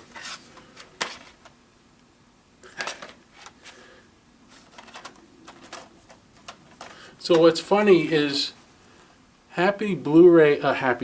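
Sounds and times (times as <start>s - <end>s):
rustling: 0.0s - 1.6s, 2.6s - 8.2s
plastic cases clicking: 4.7s - 7.5s.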